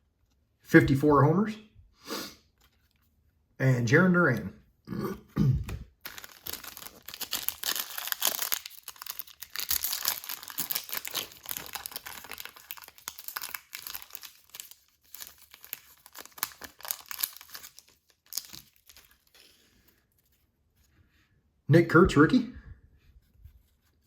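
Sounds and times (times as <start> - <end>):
wrapper crinkling and tearing: 5.9 - 19.6.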